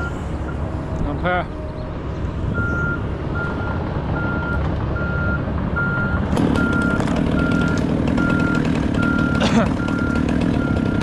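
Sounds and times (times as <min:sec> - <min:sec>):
vehicle engine running: 0:00.0 - 0:11.0
reversing alarm beeping: 0:02.6 - 0:11.0.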